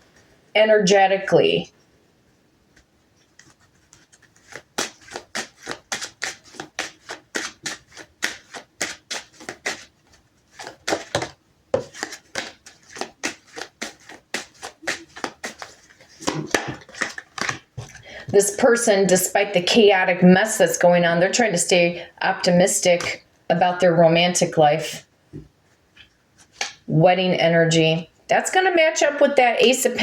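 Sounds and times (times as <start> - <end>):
cards being shuffled: 2.7 - 18.3.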